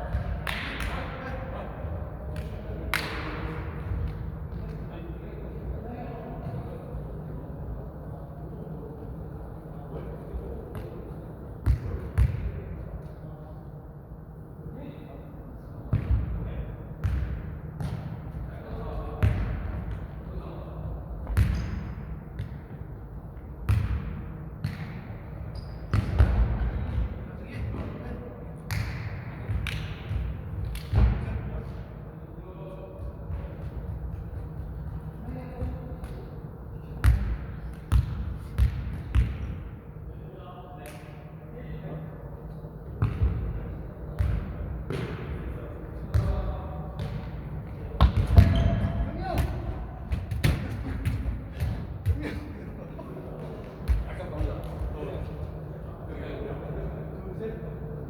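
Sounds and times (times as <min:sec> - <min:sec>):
ball kicked and bouncing: 0:48.0 - 0:52.2.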